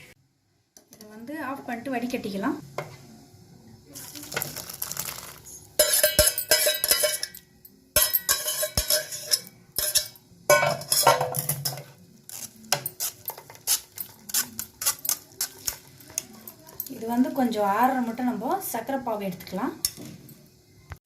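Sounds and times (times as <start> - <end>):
metal pots and utensils clattering: 4.0 - 18.3, 19.8 - 20.4.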